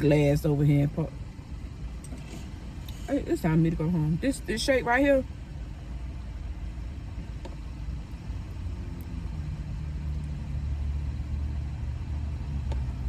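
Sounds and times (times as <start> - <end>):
car engine humming: 0.0 - 13.0.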